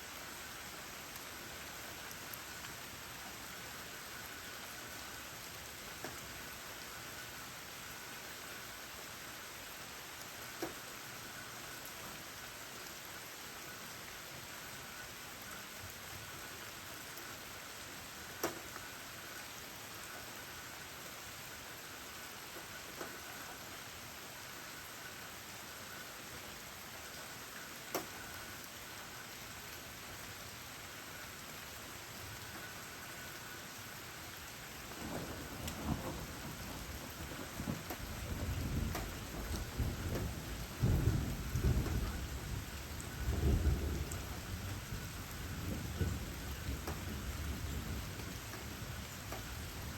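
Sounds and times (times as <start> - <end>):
steady rain falling: 0.0 - 49.9
rolling thunder rumble: 34.9 - 49.0.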